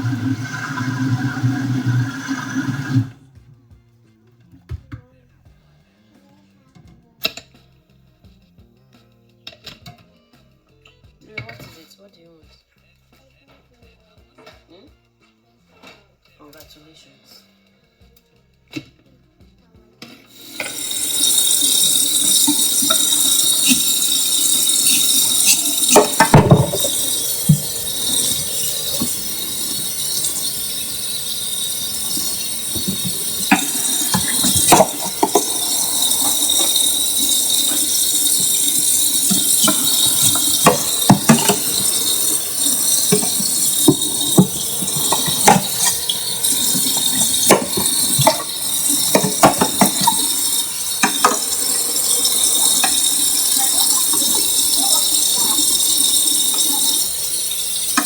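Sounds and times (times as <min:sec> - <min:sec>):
pots and dishes clinking: 0:00.0 - 0:03.2, 0:20.4 - 0:58.0
steady hiss: 0:00.0 - 0:03.2, 0:20.4 - 0:58.0.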